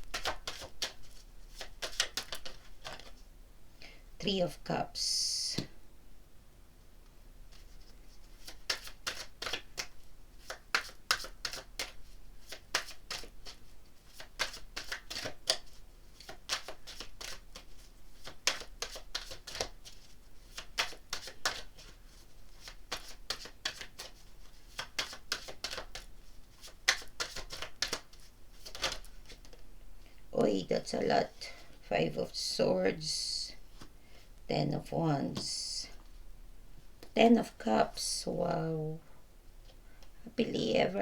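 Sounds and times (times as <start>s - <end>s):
cards being shuffled: 0.0s - 3.2s, 7.5s - 29.6s.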